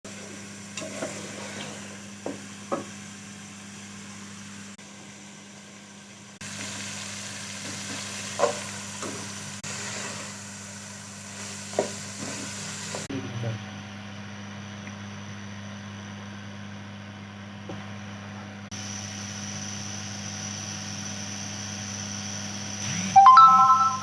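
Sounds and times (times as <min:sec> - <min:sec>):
food sizzling in a pan: 0:06.4 - 0:13.1.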